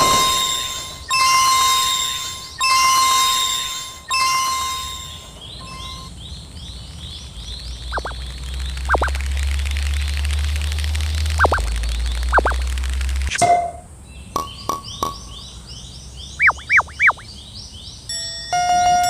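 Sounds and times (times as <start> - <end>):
cartoon crossing warning chime: 0.0 - 6.1, 18.1 - 19.0
short rising chirps: 0.0 - 6.1, 7.9 - 9.4, 11.2 - 12.8, 16.4 - 17.3
whistle-like swoops: 0.0 - 6.1, 16.4 - 17.3.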